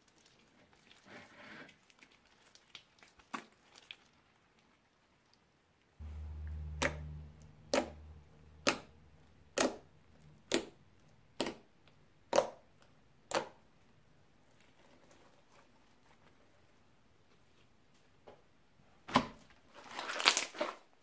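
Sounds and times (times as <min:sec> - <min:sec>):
low hum: 0:06.0 - 0:11.3.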